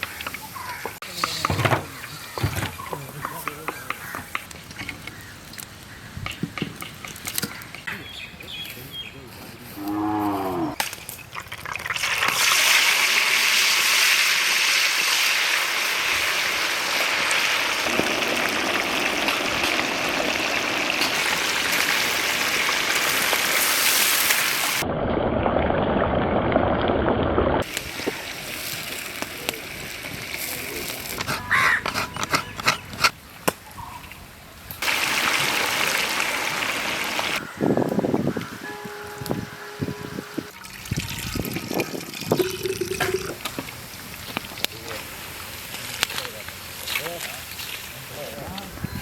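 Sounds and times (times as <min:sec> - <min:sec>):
cow mooing: 0:09.8 - 0:10.8
fish deep-frying in oil: 0:11.2 - 0:24.8, 0:27.6 - 0:31.2, 0:34.8 - 0:37.4, 0:40.5 - 0:49.0.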